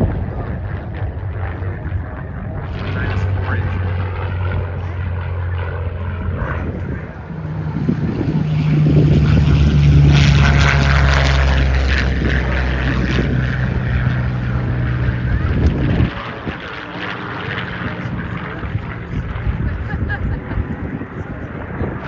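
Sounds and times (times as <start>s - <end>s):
propeller plane engine passing by: 0.0s - 22.0s.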